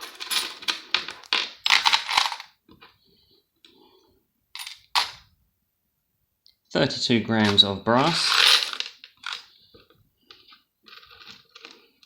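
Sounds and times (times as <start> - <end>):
scrap metal clinking and clattering: 0.0 - 2.5, 7.4 - 11.9.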